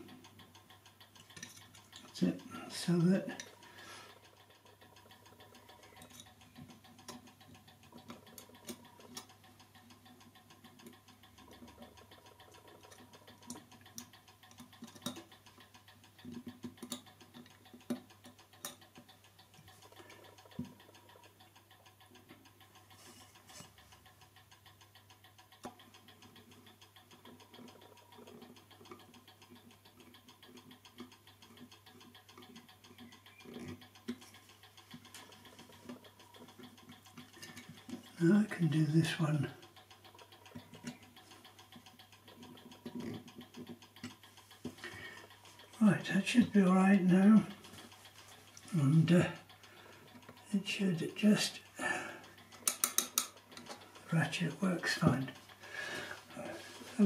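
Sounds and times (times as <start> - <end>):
small metallic clicks and taps: 0.0 - 57.0.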